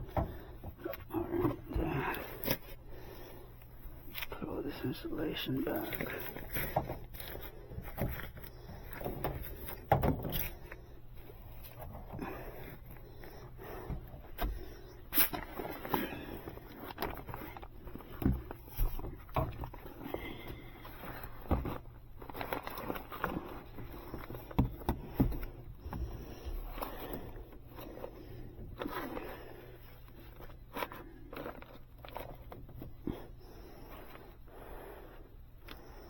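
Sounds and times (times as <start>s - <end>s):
knocks and thumps: 7.8s - 10.5s, 24.4s - 26.3s.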